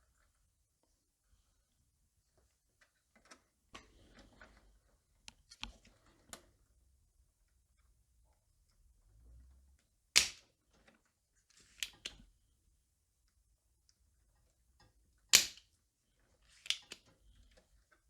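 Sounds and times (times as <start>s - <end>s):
loud snaps: 10.2s - 10.4s.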